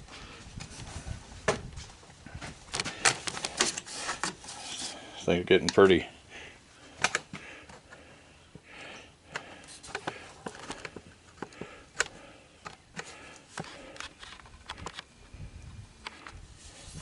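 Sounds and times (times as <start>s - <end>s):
objects being handled clicking: 9.3s - 15.1s.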